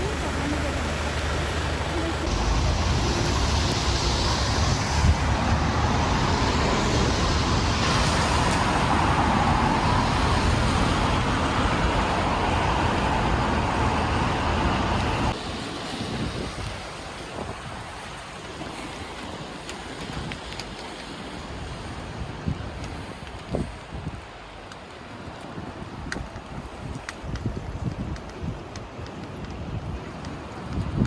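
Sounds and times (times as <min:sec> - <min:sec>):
motor vehicles passing: 0:00.0 - 0:15.4.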